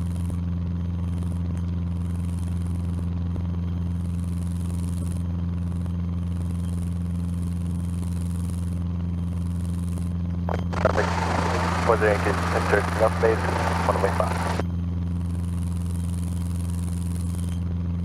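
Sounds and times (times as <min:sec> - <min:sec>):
light aircraft engine droning: 0:10.5 - 0:14.6.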